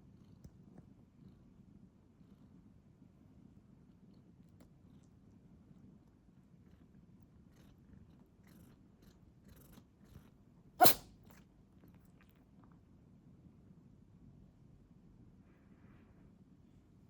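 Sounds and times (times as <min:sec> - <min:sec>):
cat sneezing: 0:10.8 - 0:11.1.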